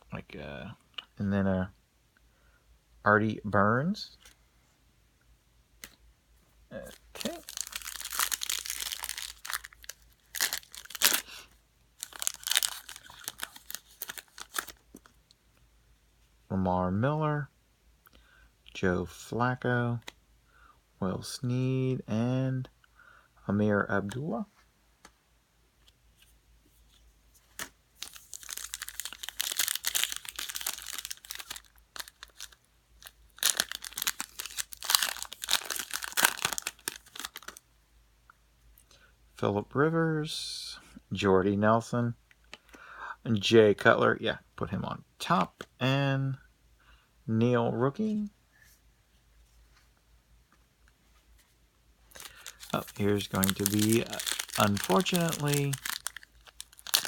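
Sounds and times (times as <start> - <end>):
cards rustling and clicking: 6.8 - 11.3, 12.0 - 15.2, 26.9 - 37.6, 52.1 - 57.0
foil wrapper crinkling and tearing: 6.8 - 11.3, 12.0 - 15.1, 27.6 - 37.6, 52.1 - 57.0.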